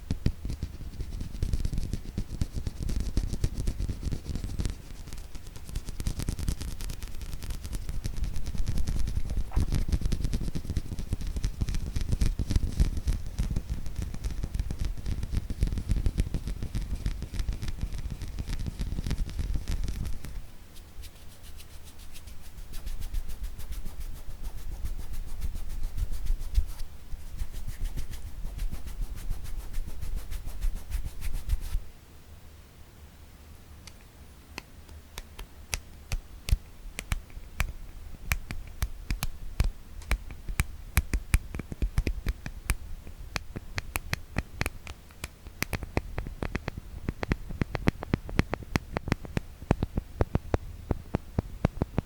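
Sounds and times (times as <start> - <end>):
fingertip and nail tapping: 4.4 - 20.4, 33.8 - 52.0.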